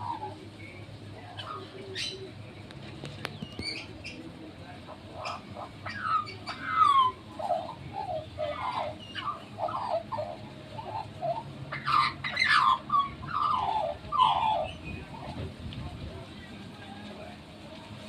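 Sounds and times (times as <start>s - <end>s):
bird warbling: 0.0s - 2.4s, 3.2s - 4.3s, 4.9s - 15.4s
harsh bird calls: 0.0s - 15.4s.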